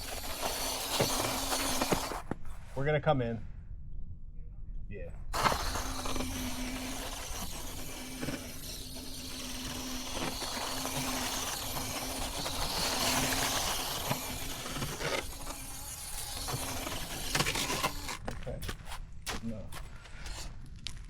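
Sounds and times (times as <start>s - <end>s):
rc car electric motor humming: 0.0s - 2.6s, 5.3s - 19.0s.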